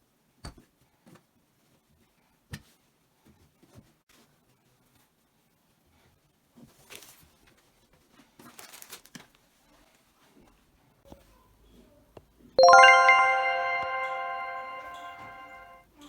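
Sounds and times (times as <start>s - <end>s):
bell-like ringing chord: 12.6s - 15.8s.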